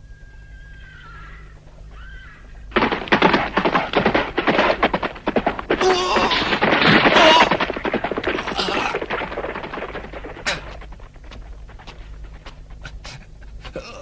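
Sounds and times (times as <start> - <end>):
rapid sharp cracks and clatter: 2.7 - 13.2.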